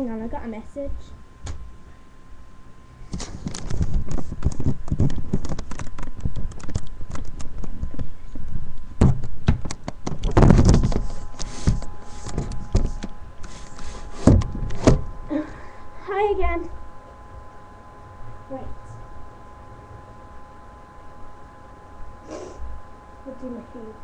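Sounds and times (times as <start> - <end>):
rustling close to microphone: 3.1 - 8.4, 10.0 - 15.1.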